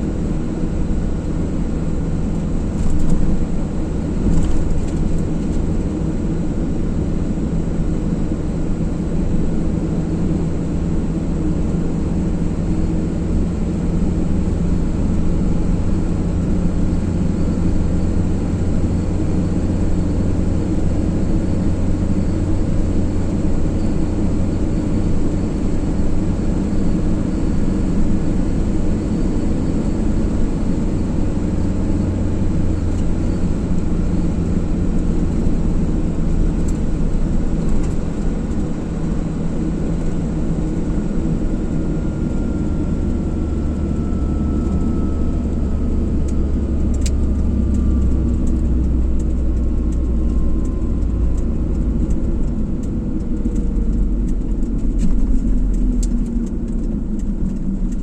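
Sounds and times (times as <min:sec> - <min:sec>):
car engine and tyre noise: 0:00.0 - 0:58.0
faint falling whine: 0:40.8 - 0:58.0.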